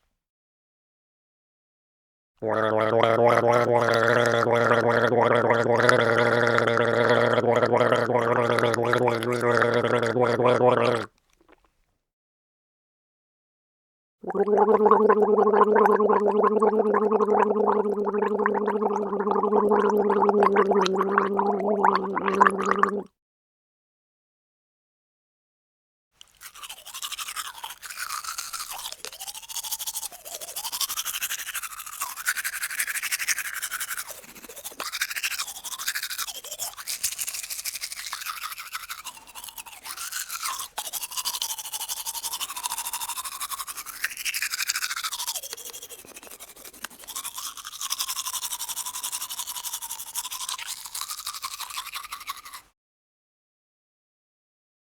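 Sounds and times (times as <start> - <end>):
toothbrush scrubbing teeth: 2.8 - 11.6, 16.0 - 23.0, 26.2 - 52.7.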